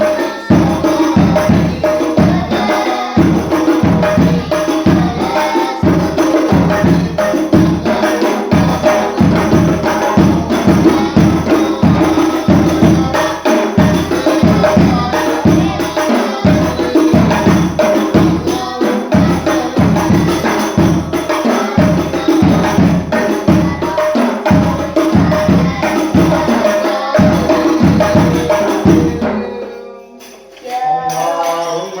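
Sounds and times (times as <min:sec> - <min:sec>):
frame drums playing fast rhythm: 0:00.0 - 0:30.4
held sung tones: 0:00.0 - 0:32.0
person chanting: 0:26.8 - 0:32.0.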